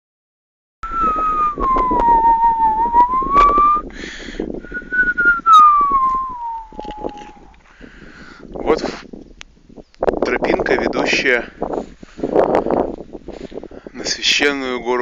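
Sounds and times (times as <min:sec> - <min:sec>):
gliding whistle: 0:00.8 - 0:03.8, 0:04.8 - 0:07.5
wind rumble on microphone: 0:00.8 - 0:15.0.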